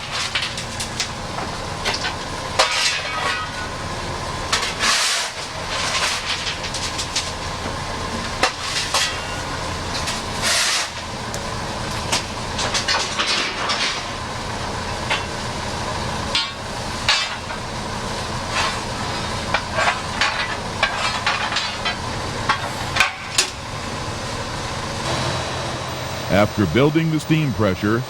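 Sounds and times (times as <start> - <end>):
metal tools clanking and scraping: 19.5 - 23.6
low rumble and hiss: 22.2 - 28.0.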